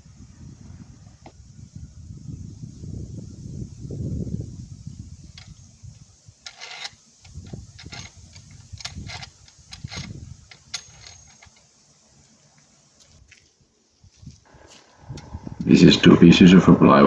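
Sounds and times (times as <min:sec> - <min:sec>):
hard parts clicking and knocking: 0:06.4 - 0:11.7.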